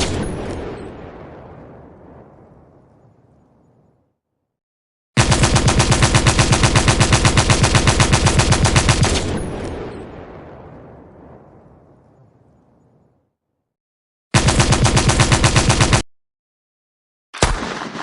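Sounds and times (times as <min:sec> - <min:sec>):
machine-gun rapid fire: 0:05.2 - 0:09.6, 0:14.4 - 0:16.0, 0:17.4 - 0:18.0.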